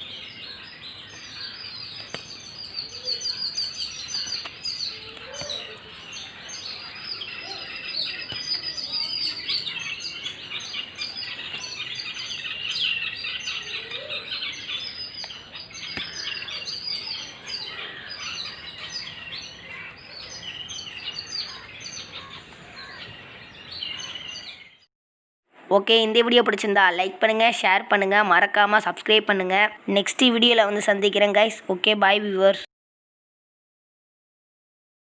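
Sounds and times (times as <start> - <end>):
small birds chirping: 0.0 - 24.9.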